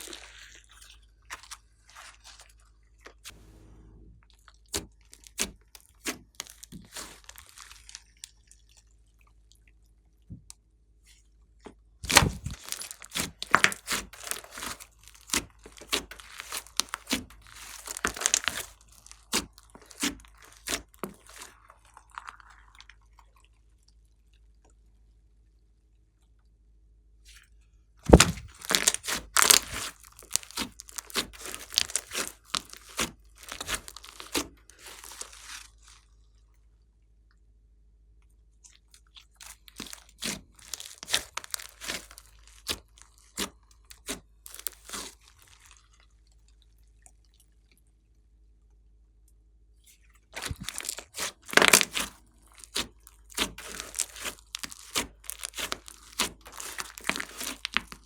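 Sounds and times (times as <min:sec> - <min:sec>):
slime crackling and popping: 0:04.7 - 0:08.2, 0:12.0 - 0:22.5, 0:28.1 - 0:36.0, 0:39.4 - 0:45.9, 0:50.4 - 0:58.0.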